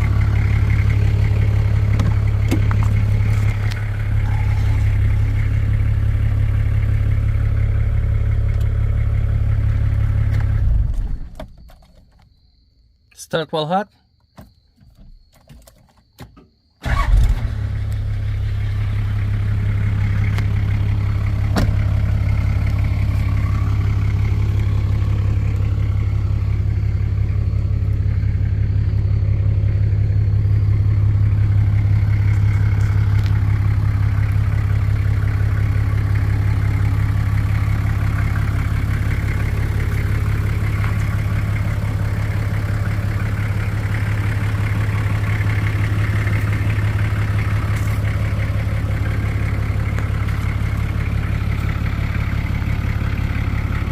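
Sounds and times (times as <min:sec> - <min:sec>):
diesel engine starting and idling: 0:00.0 - 0:11.6, 0:16.6 - 0:53.9.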